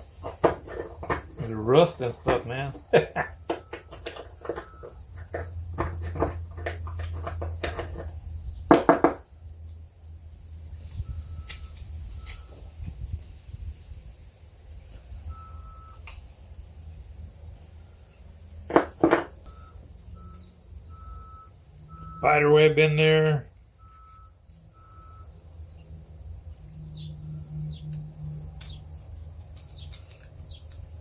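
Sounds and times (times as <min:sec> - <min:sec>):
sharp knocks: 0:08.7 - 0:09.2, 0:18.7 - 0:19.5.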